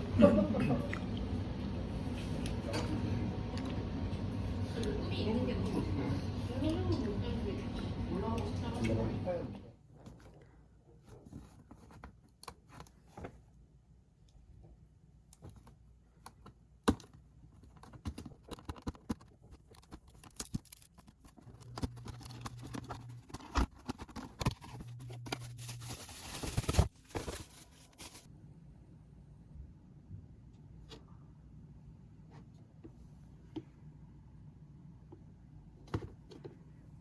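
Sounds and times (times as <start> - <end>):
short low hum: 21.5 - 26.6.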